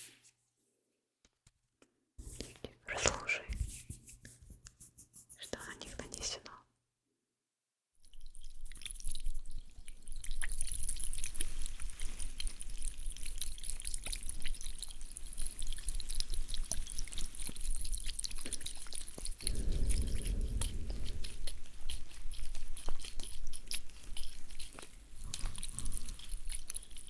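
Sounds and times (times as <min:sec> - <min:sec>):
low rumble: 0:19.4 - 0:22.9.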